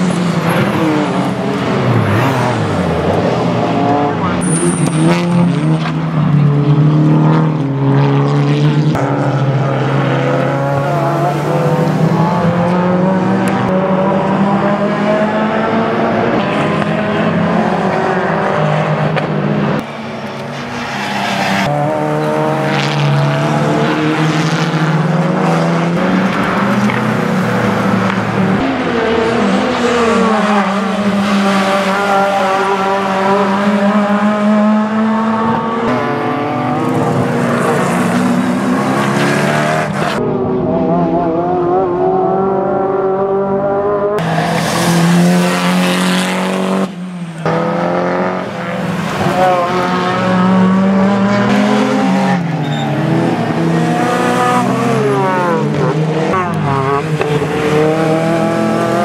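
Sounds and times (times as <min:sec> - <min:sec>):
racing car engines at full throttle: 0:00.0 - 0:59.0
tyre squeal: 0:52.6 - 0:53.1.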